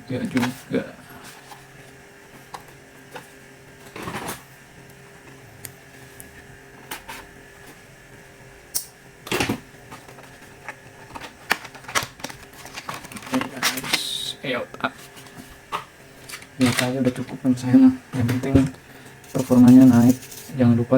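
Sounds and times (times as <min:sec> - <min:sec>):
faint steady hum: 0:00.0 - 0:20.9
scraping rustles: 0:19.1 - 0:20.6.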